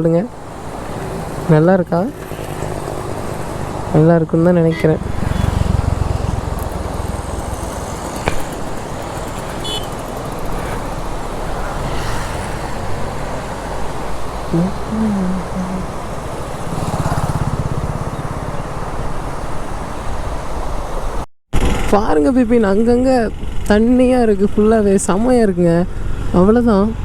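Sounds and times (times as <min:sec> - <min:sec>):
wind and road noise: 0:00.0 - 0:27.0
motorcycle engine: 0:00.4 - 0:19.4.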